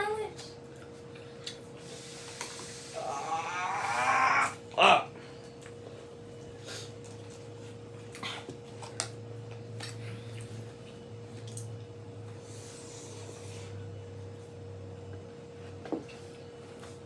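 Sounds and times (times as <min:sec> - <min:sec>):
steady low hum: 0:00.0 - 0:17.0
chewing crunchy food: 0:05.4 - 0:12.4.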